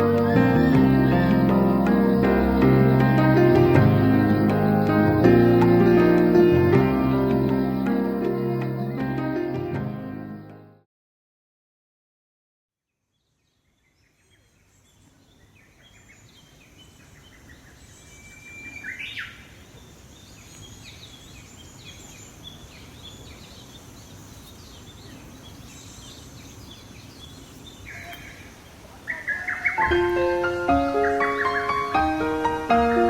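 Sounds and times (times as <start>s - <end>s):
outdoor background noise: 0.0s - 10.6s, 12.9s - 33.0s
songbirds chirping and singing: 0.0s - 10.7s, 13.4s - 32.4s
piano notes: 0.0s - 10.8s, 29.8s - 33.0s.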